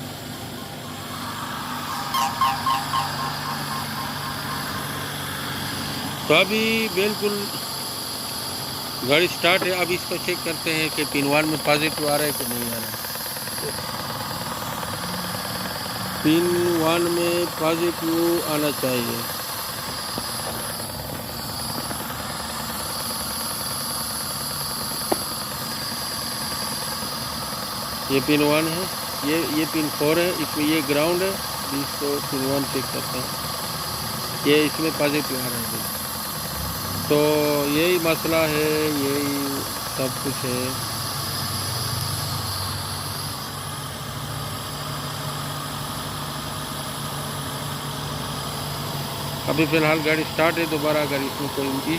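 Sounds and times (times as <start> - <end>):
petrol engine idling: 0.0 - 51.9.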